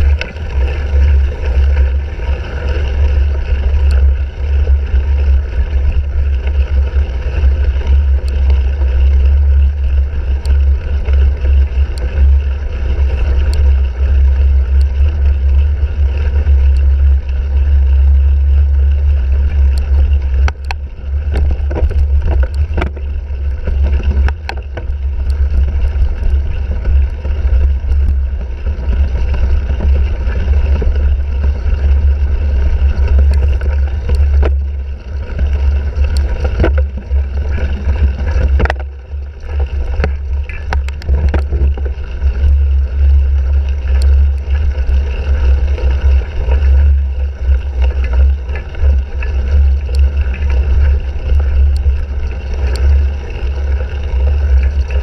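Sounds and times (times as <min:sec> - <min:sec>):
bike knocks and rattles: 0:00.0 - 0:55.0
wind buffeting microphone: 0:00.0 - 0:55.0.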